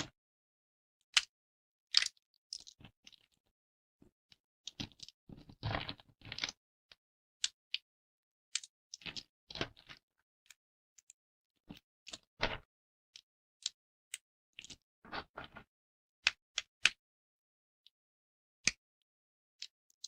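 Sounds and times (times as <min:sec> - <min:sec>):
soap plates snapping and crunching: 0:01.1 - 0:01.3, 0:01.9 - 0:03.2, 0:08.5 - 0:10.0.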